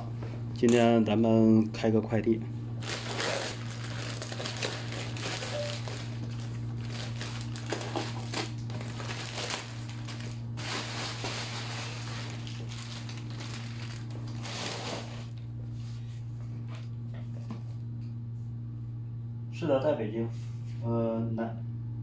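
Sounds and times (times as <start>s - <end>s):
steady low hum: 0.0s - 22.0s
packaging crinkling and rustling: 2.8s - 15.4s.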